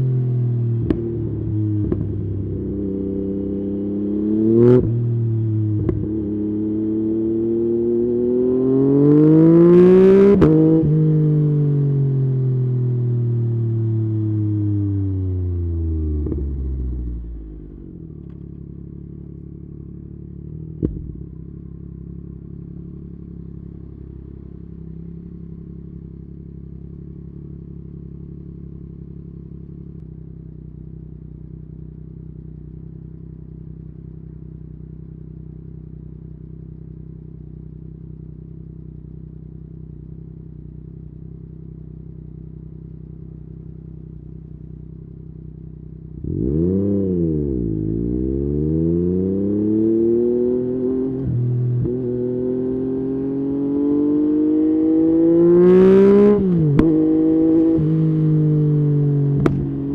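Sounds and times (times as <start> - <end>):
sharp exhaust pop: 0.8 - 1.2, 1.8 - 2.2, 20.7 - 21.6, 56.5 - 57.1, 59.3 - 59.9
motorcycle engine idling: 12.6 - 46.4, 57.6 - 59.9.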